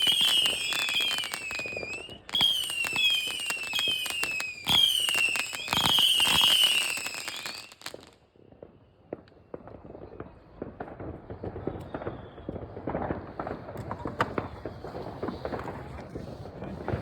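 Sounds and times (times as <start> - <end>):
firework whistles: 0.0 - 10.4, 11.3 - 13.8
faint firework pops: 0.0 - 17.0
fireworks crackling and bangs: 0.0 - 17.0.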